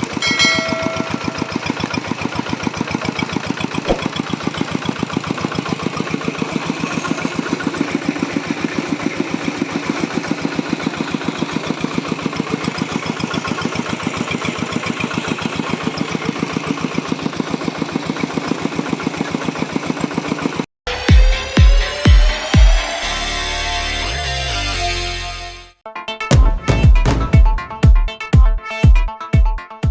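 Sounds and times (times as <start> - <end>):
diesel engine driving grinding mill: 0.0 - 20.7.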